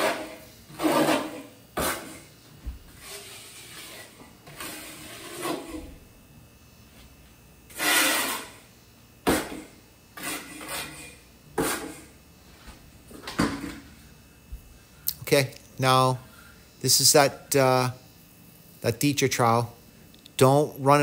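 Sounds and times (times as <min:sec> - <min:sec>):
trowel scraping membrane: 0:00.0 - 0:02.2, 0:03.0 - 0:06.0, 0:07.7 - 0:08.6, 0:10.2 - 0:12.1.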